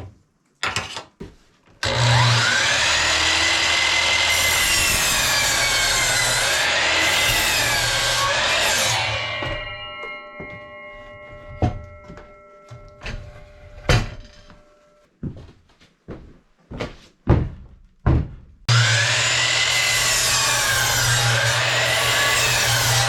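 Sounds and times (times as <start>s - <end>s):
power saw running: 1.8s - 9.4s, 18.7s - 23.0s.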